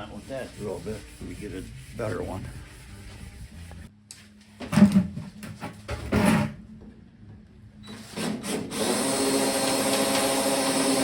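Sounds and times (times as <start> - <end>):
electric drill whine: 7.8 - 11.0.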